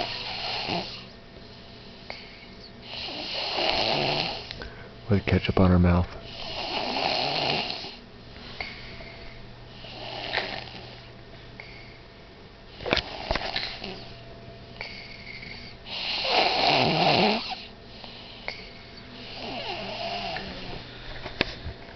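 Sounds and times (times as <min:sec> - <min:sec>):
loud snoring: 0:00.0 - 0:01.1, 0:02.8 - 0:04.5, 0:06.3 - 0:08.0, 0:09.8 - 0:11.0, 0:15.9 - 0:18.6, 0:19.2 - 0:20.8.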